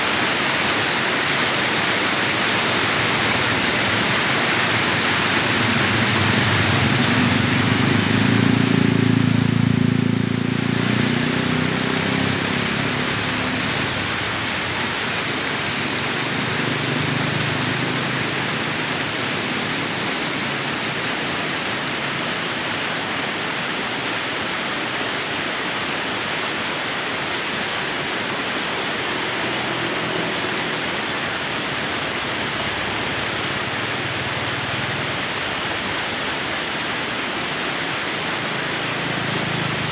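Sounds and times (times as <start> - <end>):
river water rushing: 0.0 - 39.9
low engine hum: 0.1 - 23.6, 28.4 - 39.9.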